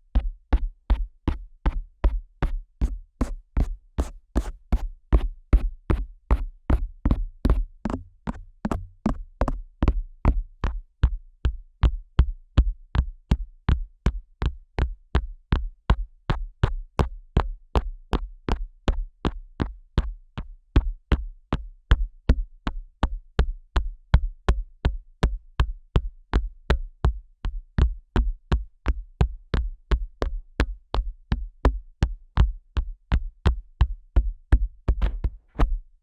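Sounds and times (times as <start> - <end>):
fingers rubbing microphone ear: 2.8 - 4.9, 35.0 - 35.8
fingers tapping microphone ear: 34.8 - 35.8
deep muffled thump: 34.9 - 35.8.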